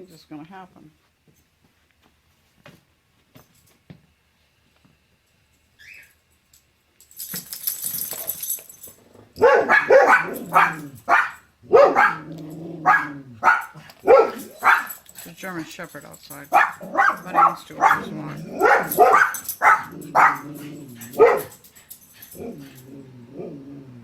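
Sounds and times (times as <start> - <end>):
dog barking: 9.4 - 15.0, 16.5 - 21.6.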